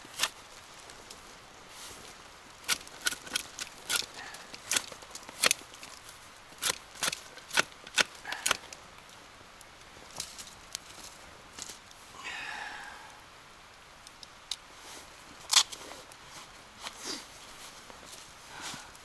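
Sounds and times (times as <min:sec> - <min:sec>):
firewood snapping and knocking: 0:02.6 - 0:09.2.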